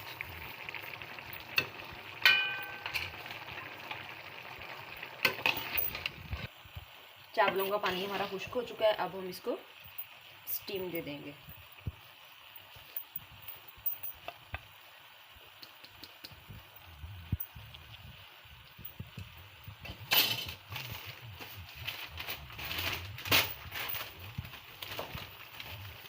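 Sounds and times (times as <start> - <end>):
pot and lid clinking: 1.5 - 3.7
newspaper rustling: 20.6 - 26.0.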